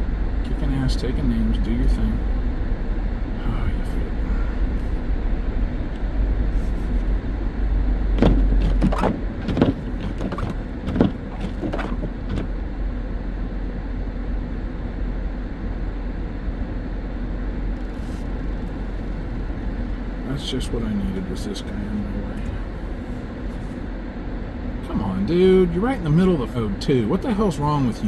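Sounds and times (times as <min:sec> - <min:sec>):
car engine and road rumble: 0:00.0 - 0:28.0
knocks and thumps: 0:08.1 - 0:12.5.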